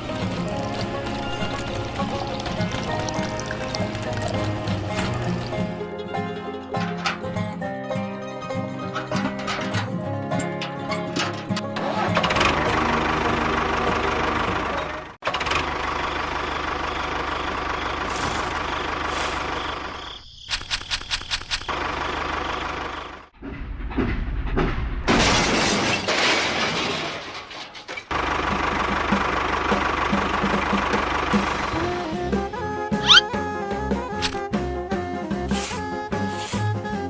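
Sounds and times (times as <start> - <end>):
machine engine running: 0.0 - 5.9.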